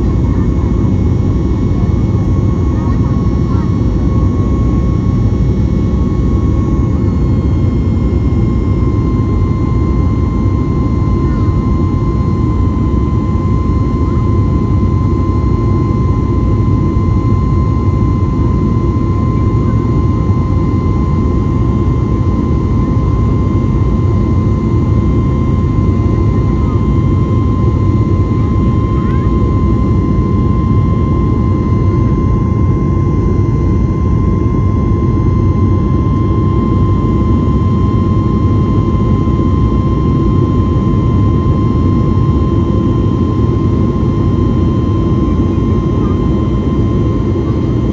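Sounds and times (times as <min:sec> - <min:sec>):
airplane cabin rumble: 0:00.0 - 0:47.9
thin steady whine: 0:00.0 - 0:47.9.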